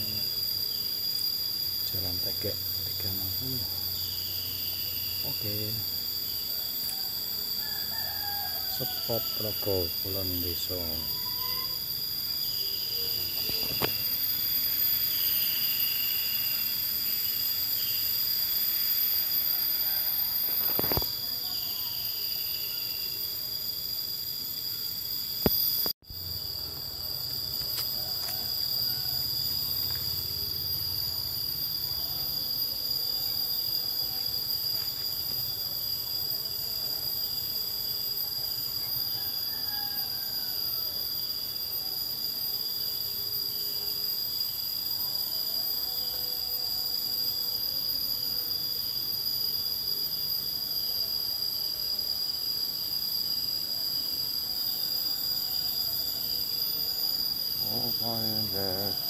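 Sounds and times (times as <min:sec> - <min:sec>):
insects chorusing: 0:00.0 - 0:59.0
pulsing insect trill: 0:00.0 - 0:59.0.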